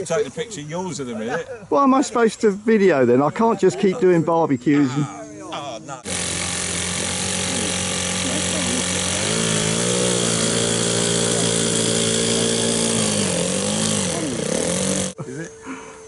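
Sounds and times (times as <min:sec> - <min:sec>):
small engine running: 0:06.0 - 0:15.2.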